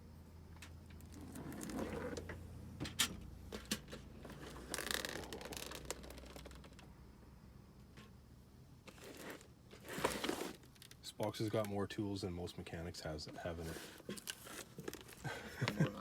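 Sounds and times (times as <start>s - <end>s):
scraping rustle: 1.0s - 2.3s, 8.9s - 10.7s, 13.4s - 15.8s.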